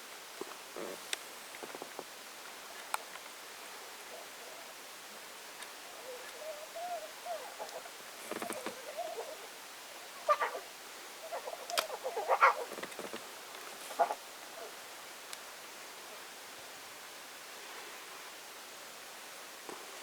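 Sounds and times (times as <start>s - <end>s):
lion cub mewing: 11.3s - 12.7s.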